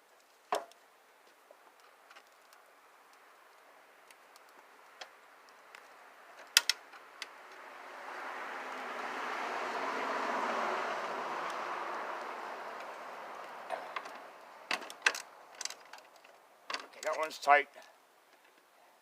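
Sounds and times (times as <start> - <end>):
vehicle passing by: 7.0 - 14.7.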